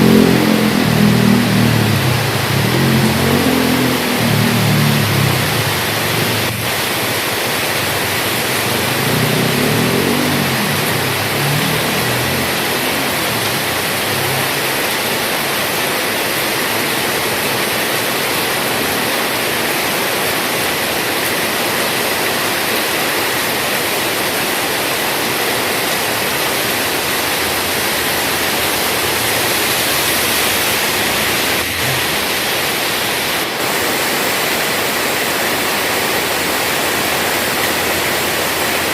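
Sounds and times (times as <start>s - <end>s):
low rumble: 0.0s - 7.2s
heavy rain falling: 0.0s - 38.9s.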